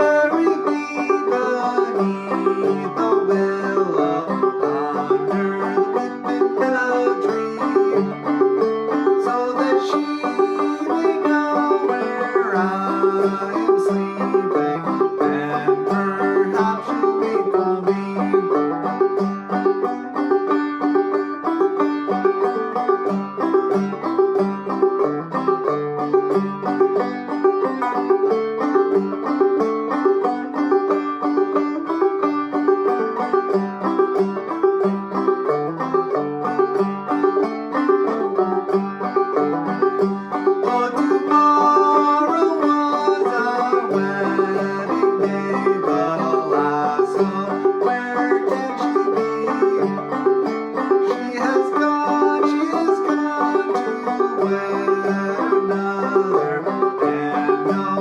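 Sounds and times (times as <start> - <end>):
banjo playing old-time melody: 0.0 - 58.0.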